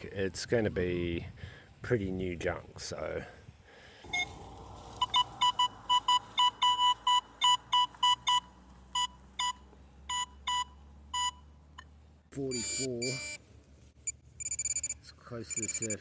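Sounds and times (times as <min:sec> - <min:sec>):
metal detector beeps: 0:05.0 - 0:11.4, 0:12.5 - 0:13.4, 0:14.0 - 0:16.0.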